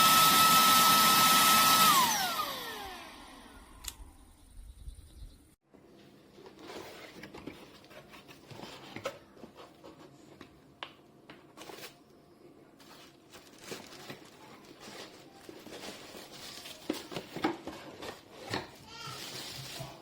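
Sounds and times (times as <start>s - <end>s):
objects rustling: 5.8s - 10.6s, 11.2s - 20.0s
objects clicking and tapping: 13.7s - 20.0s.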